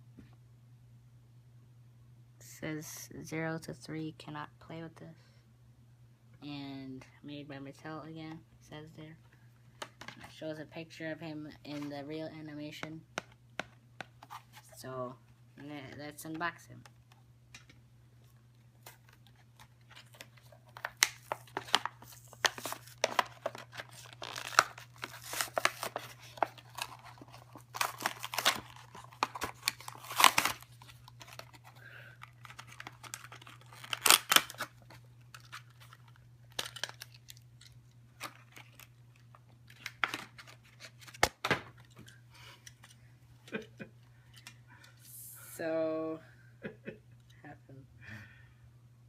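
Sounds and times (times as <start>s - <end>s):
steady low hum: 0.0s - 49.0s
packaging tearing and crinkling: 18.8s - 42.1s.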